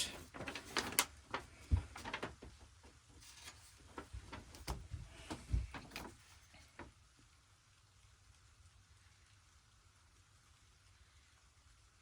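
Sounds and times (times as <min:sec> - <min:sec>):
paper pages rustling: 0:00.1 - 0:02.6, 0:03.2 - 0:05.0.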